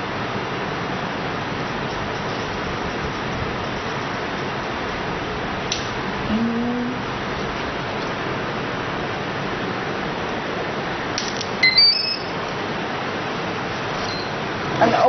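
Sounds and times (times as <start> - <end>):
electronic motor beeps: 11.6 - 12.3, 14.0 - 14.4.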